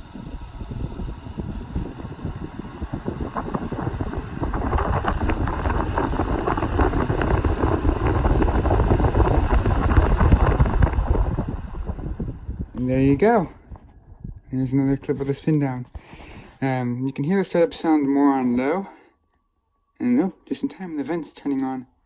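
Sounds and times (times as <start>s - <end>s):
box fan airflow rumbling: 0.0s - 16.8s.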